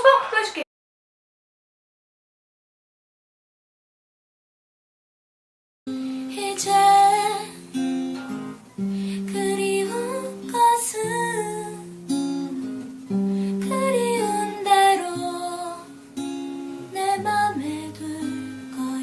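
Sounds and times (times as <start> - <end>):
acoustic guitar playing: 5.9 - 19.0
person singing: 6.2 - 7.8, 9.0 - 11.9, 13.4 - 16.0, 16.9 - 19.0.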